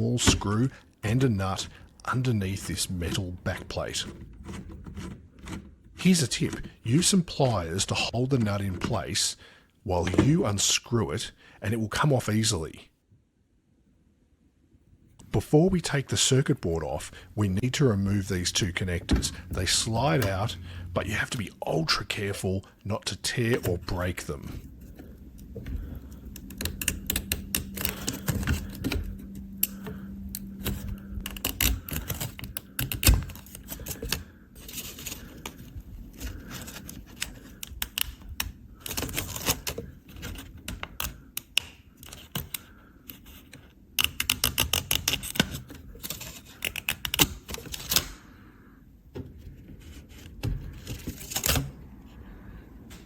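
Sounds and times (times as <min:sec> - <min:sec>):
faint steady hum: 0:00.0 - 0:53.0
keyboard parts clicking and clattering: 0:01.9 - 0:09.1, 0:23.4 - 0:48.2.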